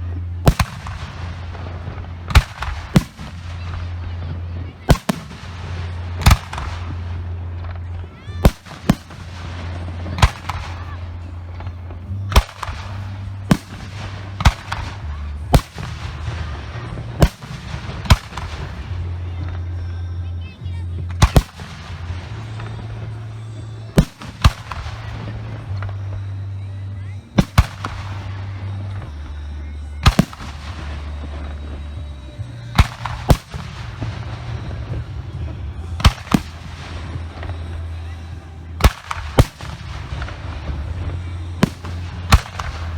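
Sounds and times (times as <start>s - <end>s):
firework booms: 0.0s - 19.9s, 20.9s - 26.4s, 27.4s - 32.0s, 32.7s - 42.9s
firework crackling: 0.0s - 42.9s
low rumble: 0.0s - 42.9s.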